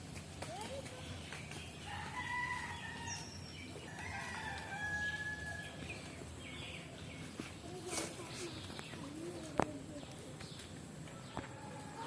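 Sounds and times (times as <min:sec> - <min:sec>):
rooster crowing: 0:01.9 - 0:03.3, 0:03.9 - 0:05.8, 0:11.2 - 0:12.0.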